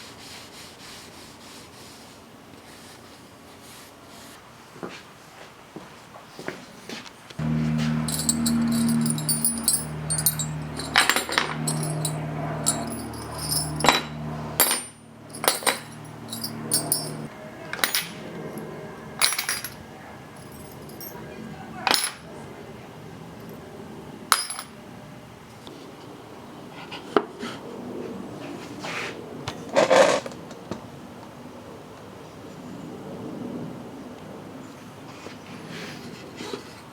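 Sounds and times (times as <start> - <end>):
low steady hum: 7.4 - 17.3.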